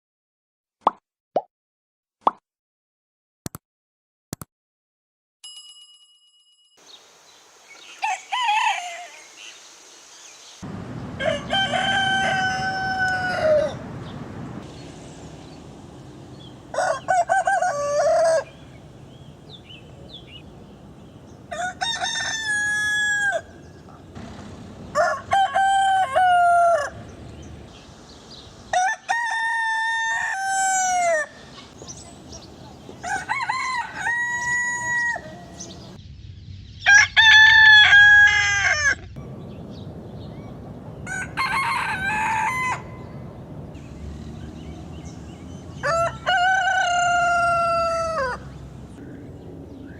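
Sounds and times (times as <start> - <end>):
background hiss: 6.8 - 11.1
roosters crowing: 7.8 - 9.5, 10.6 - 27.8, 28.4 - 31.6, 32.9 - 36.0, 36.9 - 40.3, 40.9 - 49.4.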